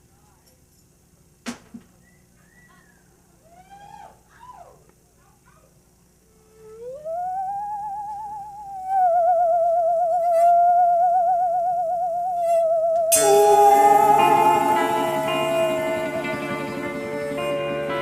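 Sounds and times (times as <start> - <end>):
eerie wavering tone: 6.4 - 18.0
band striking a loud chord: 13.1 - 18.0.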